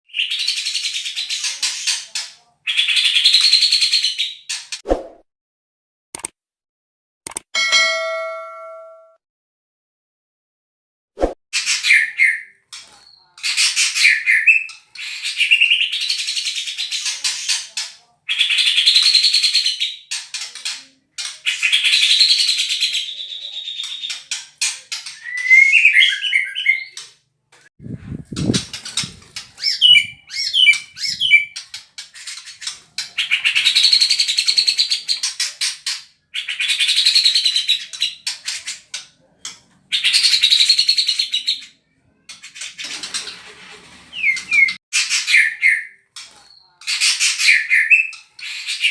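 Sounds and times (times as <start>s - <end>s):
twittering bird notes: 27.8s - 35.1s.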